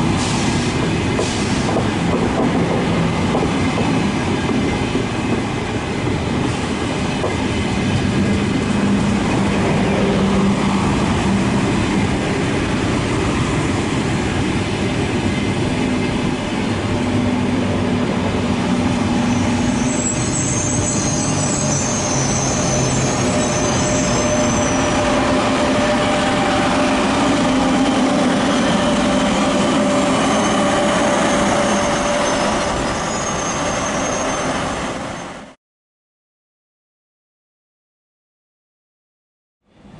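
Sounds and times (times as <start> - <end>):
high-pitched wheel squeal: 19.2 - 26.4, 28.6 - 35.5.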